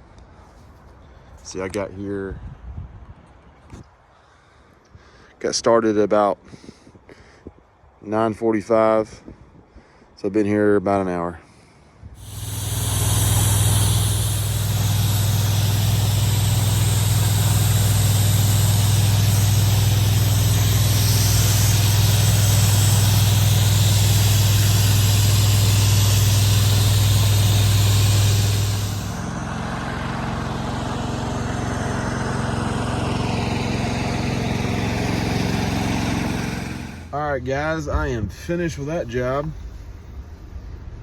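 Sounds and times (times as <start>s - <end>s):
pressure washer engine running: 12.2s - 37.2s
water jet hissing: 12.2s - 37.2s.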